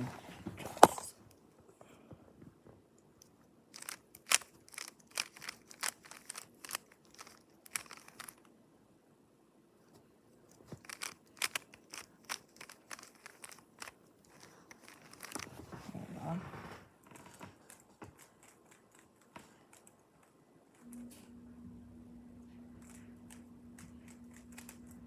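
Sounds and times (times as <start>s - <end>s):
puzzle cube clicking: 3.8s - 8.4s, 10.5s - 15.5s.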